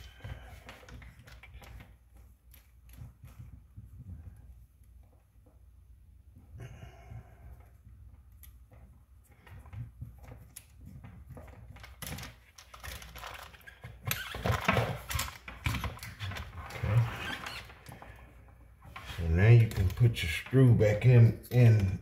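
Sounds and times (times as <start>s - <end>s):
small parts and screws rattling: 10.2s - 18.0s.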